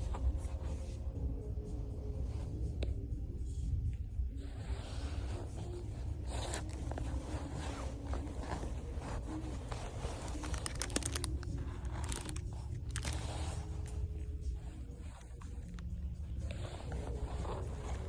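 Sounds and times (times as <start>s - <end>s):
steady low rumble: 0.0s - 18.0s
rustling and crinkling handling noise: 5.0s - 18.0s.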